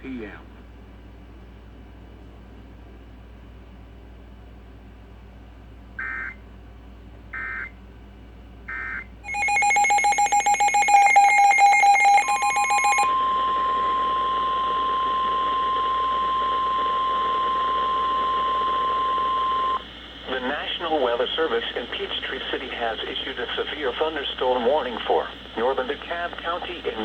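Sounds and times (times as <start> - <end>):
steady warning alarm tone: 6.0 - 6.4, 7.4 - 7.8, 8.7 - 19.8
pulsing electronic alert tone: 8.7 - 13.3
data bursts: 8.7 - 13.8
radio hiss: 20.1 - 27.0.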